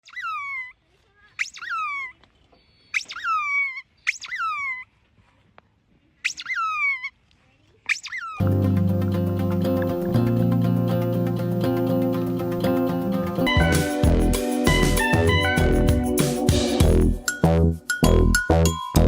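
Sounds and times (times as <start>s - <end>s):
small animal high-pitched cries: 0.0s - 2.2s, 3.0s - 4.9s, 6.3s - 7.2s, 7.9s - 8.4s
music: 8.4s - 19.0s.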